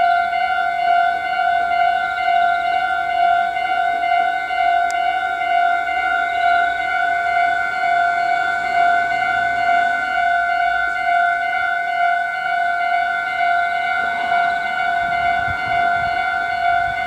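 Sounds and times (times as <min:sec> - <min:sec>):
level-crossing electronic bell ringing: 0:00.0 - 0:17.0.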